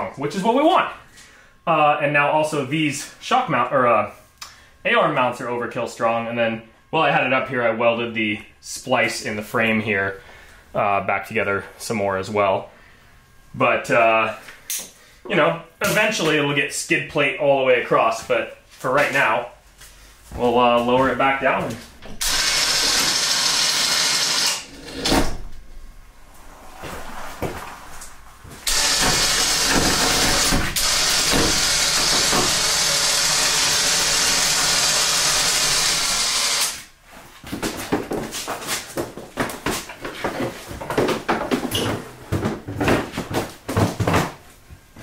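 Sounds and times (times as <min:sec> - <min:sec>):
power tool hissing: 0:22.2 - 0:25.1, 0:28.6 - 0:36.9.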